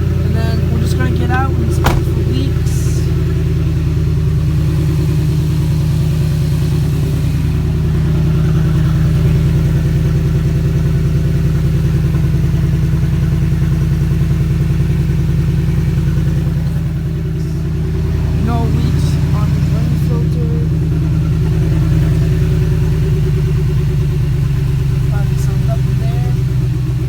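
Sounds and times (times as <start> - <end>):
engine idling: 0.0 - 27.0.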